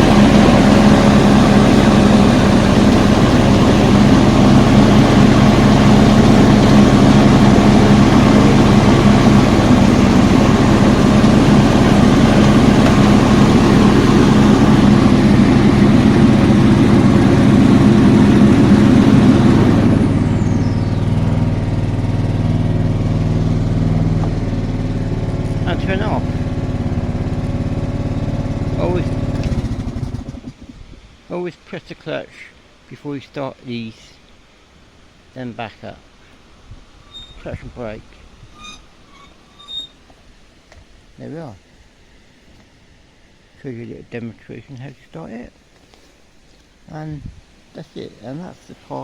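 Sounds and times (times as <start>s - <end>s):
faint whine falling in pitch: 0.0s - 29.5s, 37.0s - 40.1s
ride-on mower engine running: 0.0s - 31.1s, 36.9s - 40.5s.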